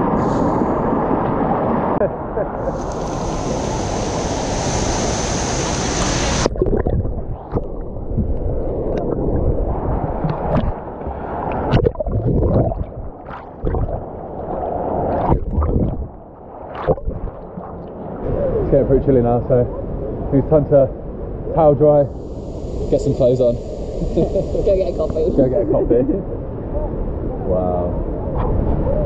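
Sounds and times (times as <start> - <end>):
water gurgling and sloshing: 0.0 - 20.3
waterfall rushing: 2.6 - 6.5
water splashes: 2.6 - 18.2.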